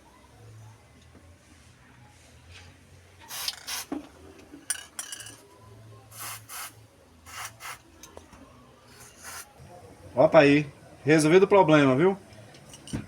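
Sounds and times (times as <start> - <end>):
aerosol spray hissing squirts: 6.1 - 7.8, 9.0 - 9.5.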